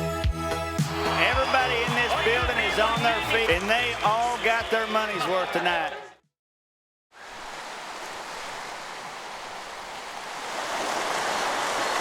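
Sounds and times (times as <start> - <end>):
stream rushing over rocks: 7.2 - 12.0.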